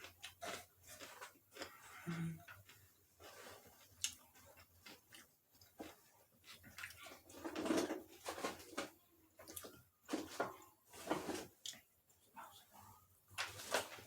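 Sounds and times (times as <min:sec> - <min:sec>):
wet chewing and smacking: 0:00.0 - 0:08.8, 0:09.4 - 0:10.7.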